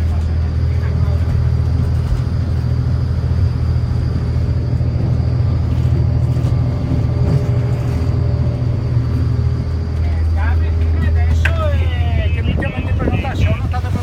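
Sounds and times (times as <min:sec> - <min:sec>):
faint high whine: 0:00.0 - 0:14.0
vehicle engine and road rumble: 0:00.0 - 0:14.0.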